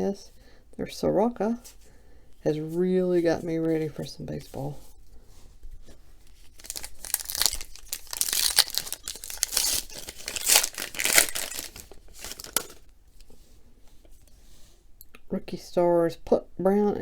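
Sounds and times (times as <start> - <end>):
wrapper tearing and crinkling: 6.2 - 12.9.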